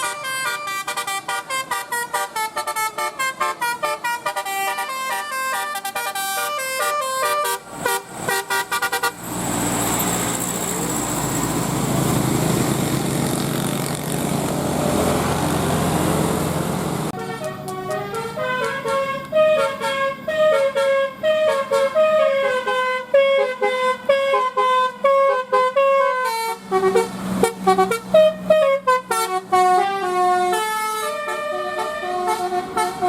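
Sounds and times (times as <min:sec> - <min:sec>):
multi-tone bus horn melody: 0:00.0 - 0:09.3, 0:16.4 - 0:33.0.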